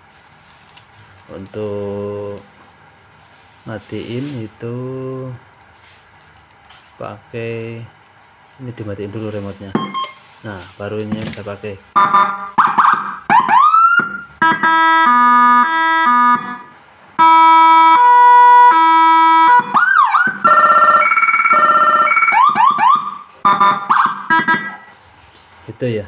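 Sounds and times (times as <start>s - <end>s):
electronic siren tones: 9.8s - 10.2s, 12.0s - 25.0s.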